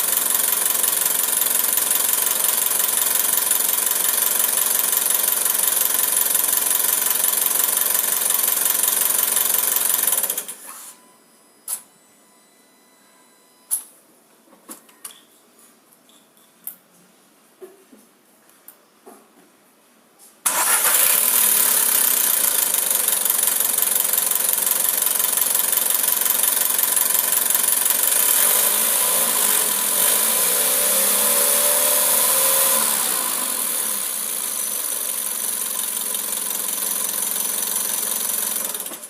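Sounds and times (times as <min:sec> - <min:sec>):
car engine starting and running: 0:20.5 - 0:38.9.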